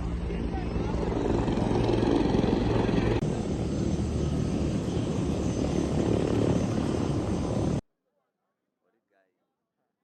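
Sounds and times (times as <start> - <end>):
aircraft engine droning: 0.0 - 7.8.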